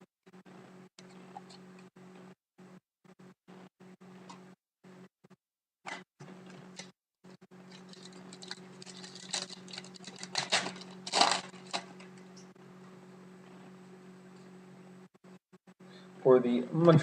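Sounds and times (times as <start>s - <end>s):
steady low hum: 6.3s - 17.0s.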